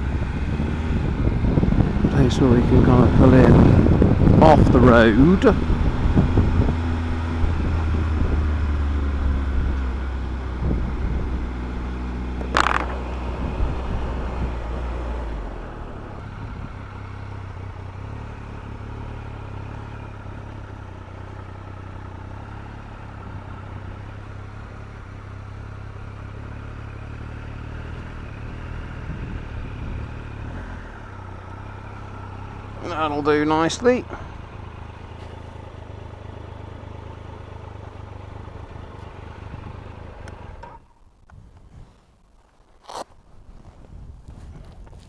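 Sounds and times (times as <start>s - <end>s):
motorcycle engine running: 0.0s - 42.0s.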